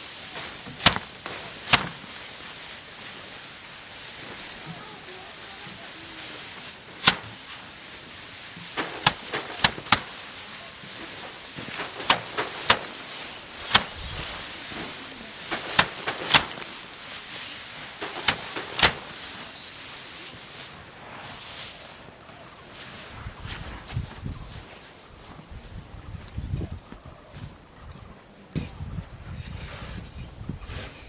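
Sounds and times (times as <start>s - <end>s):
steady hiss: 0.0s - 31.0s
sharp crisp harvesting strikes: 7.0s - 7.6s, 8.7s - 19.6s.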